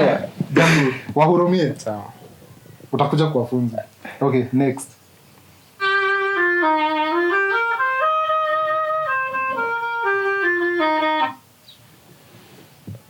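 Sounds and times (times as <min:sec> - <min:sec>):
clarinet melody: 0:05.8 - 0:11.5.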